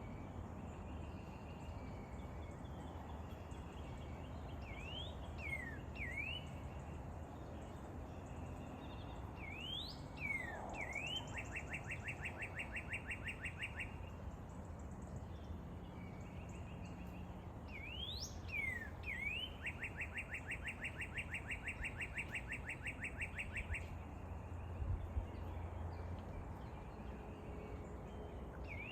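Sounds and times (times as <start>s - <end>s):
lapwing calling: 18.0s - 23.9s.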